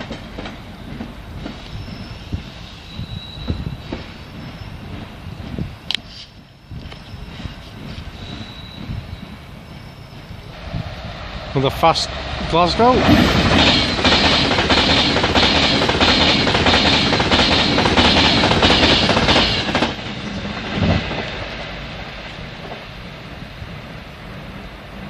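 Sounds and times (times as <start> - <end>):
train wheels clattering over rail joints: 0.0 - 9.5, 13.1 - 21.4.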